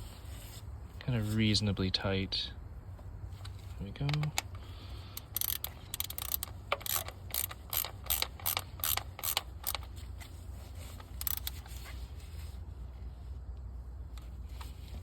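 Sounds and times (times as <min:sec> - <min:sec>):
socket ratchet wrench clicking: 0:04.1 - 0:09.9, 0:11.0 - 0:11.7.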